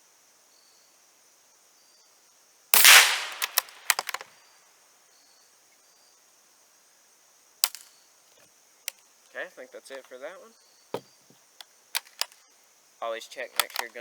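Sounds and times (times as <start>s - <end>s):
rifle shot: 2.8s - 4.2s
small metallic clicks: 2.9s - 4.2s, 7.6s - 7.9s, 12.0s - 12.4s, 13.6s - 14.0s.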